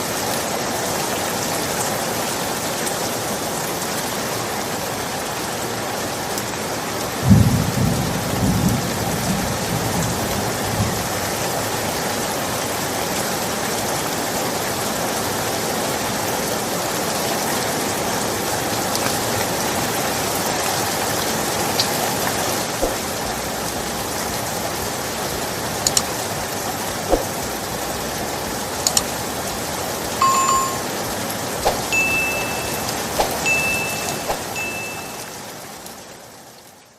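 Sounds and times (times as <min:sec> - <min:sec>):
steady rain falling: 0:00.0 - 0:36.9.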